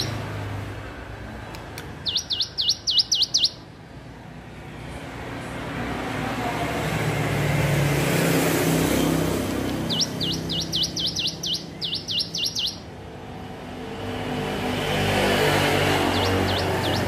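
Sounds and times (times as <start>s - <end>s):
bird singing high swooping notes: 2.0s - 3.6s, 9.8s - 12.9s, 15.8s - 17.0s.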